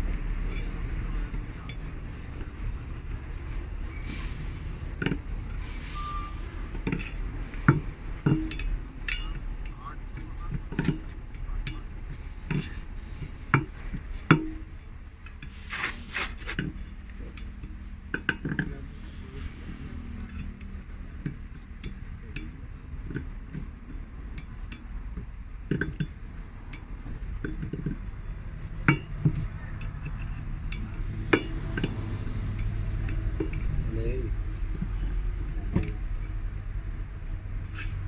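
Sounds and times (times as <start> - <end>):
metal tools clinking and knocking: 6.7 - 15.5
scraping hiss: 15.4 - 16.6.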